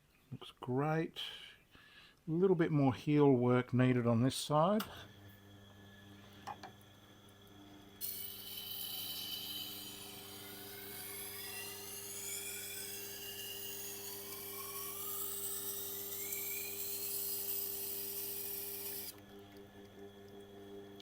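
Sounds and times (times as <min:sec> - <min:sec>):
motor humming: 0:04.9 - 0:21.0
knife grinding on sharpening wheel: 0:08.0 - 0:19.1.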